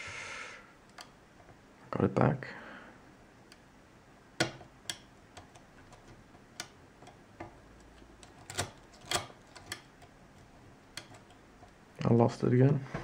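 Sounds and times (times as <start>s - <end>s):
lock pick clicking pins: 4.4s - 7.2s, 7.8s - 11.4s.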